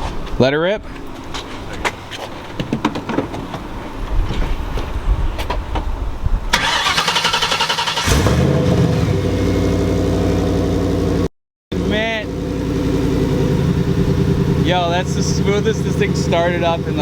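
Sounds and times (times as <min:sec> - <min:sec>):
starter motor cranking: 0:06.6 - 0:08.4
car engine idling: 0:07.9 - 0:17.0.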